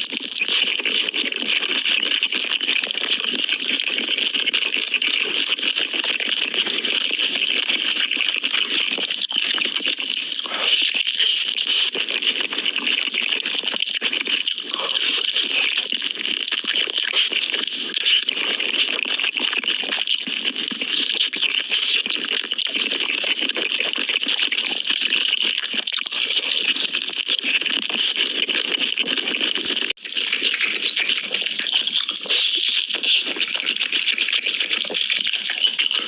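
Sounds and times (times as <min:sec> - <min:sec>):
close chewing crackles: 0:00.0 - 0:36.0
mouth clicks: 0:05.2 - 0:36.0.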